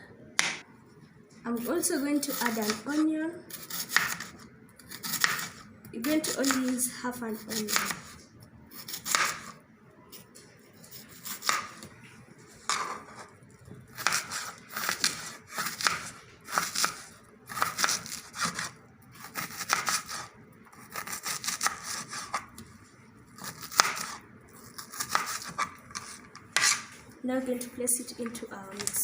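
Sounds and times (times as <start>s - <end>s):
knife slicing onion: 2.1s - 9.6s, 10.9s - 11.8s, 12.7s - 13.3s, 13.9s - 22.6s, 23.4s - 27.0s.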